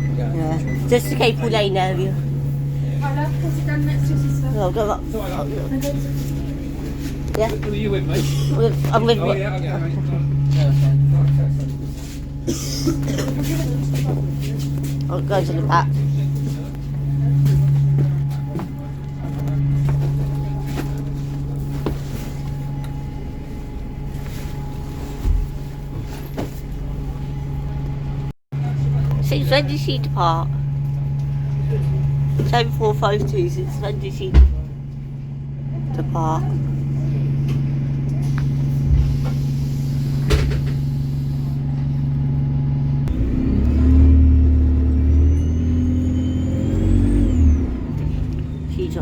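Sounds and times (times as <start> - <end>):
bus engine humming: 0.0 - 49.0
whine rising in pitch: 41.7 - 48.8.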